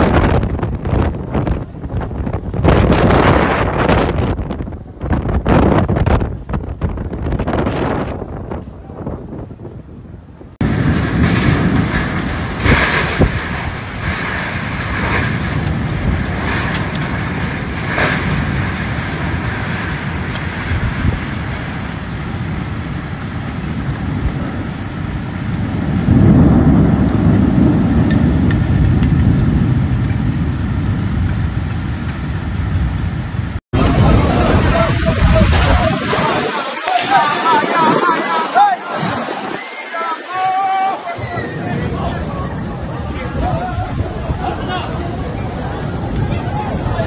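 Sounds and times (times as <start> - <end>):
heavy rain pouring: 0.0 - 9.8, 10.5 - 47.0
deep low rumble: 0.0 - 36.4.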